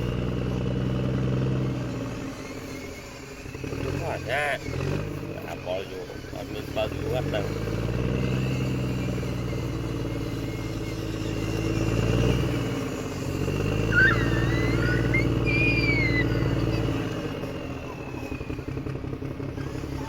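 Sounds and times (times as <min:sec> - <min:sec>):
engine running with low hum: 0:00.0 - 0:20.0
short high squeaks: 0:13.3 - 0:18.6.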